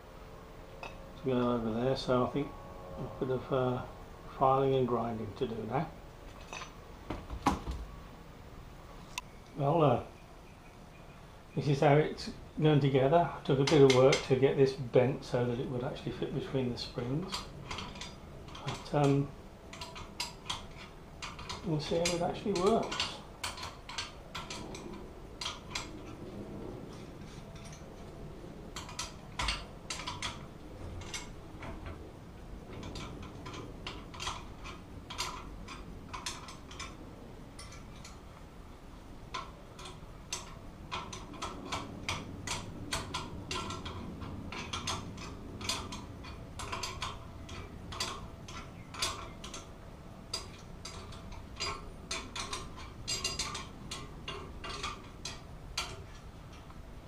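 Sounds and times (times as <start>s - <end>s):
wrench clicking on metal: 17.2s - 26.2s, 28.8s - 32.0s, 32.7s - 37.0s, 39.3s - 56.8s.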